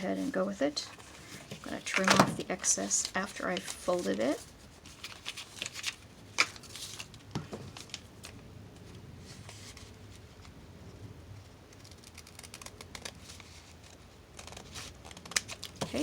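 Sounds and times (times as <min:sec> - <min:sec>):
faint paper handling: 0:00.0 - 0:10.6, 0:12.4 - 0:16.0
paper clicking and rustling: 0:11.7 - 0:16.0.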